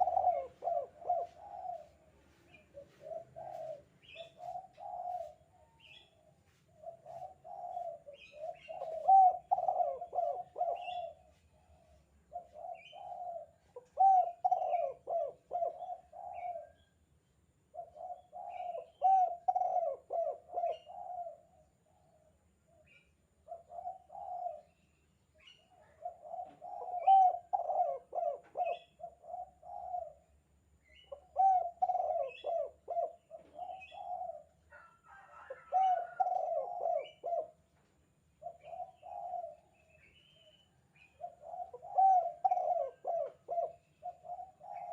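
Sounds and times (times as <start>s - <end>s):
dove cooing: 0.0s - 17.0s, 17.7s - 44.9s
small birds chirping: 0.0s - 17.0s, 22.7s - 34.6s, 38.4s - 44.9s.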